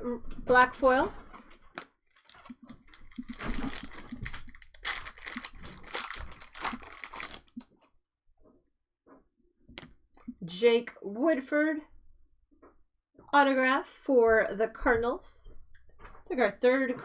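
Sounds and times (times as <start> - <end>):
plastic wrapping crinkling and tearing: 0.5 - 7.7.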